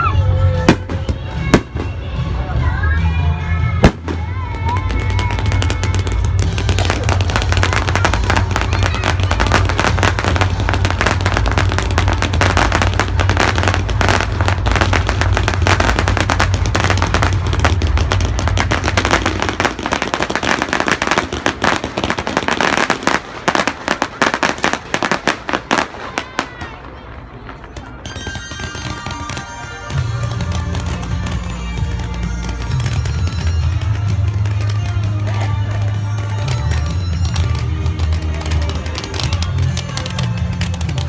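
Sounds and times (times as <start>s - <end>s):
fireworks bursts and crackling: 0.0s - 41.0s
music: 0.0s - 41.0s.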